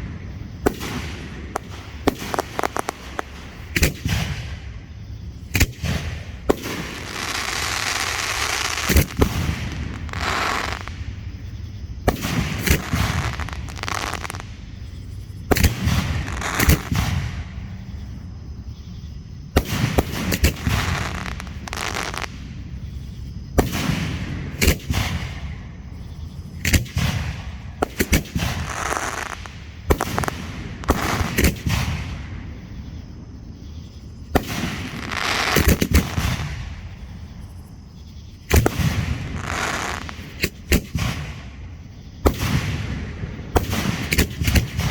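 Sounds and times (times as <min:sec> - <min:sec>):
fireworks bangs: 0:00.0 - 0:18.3, 0:19.0 - 0:33.1, 0:33.7 - 0:37.6, 0:38.4 - 0:44.9
fireworks crackling: 0:00.6 - 0:04.7, 0:05.4 - 0:11.3, 0:12.0 - 0:14.8, 0:15.4 - 0:17.7, 0:19.6 - 0:22.8, 0:26.5 - 0:32.2, 0:34.3 - 0:37.0, 0:38.5 - 0:41.6.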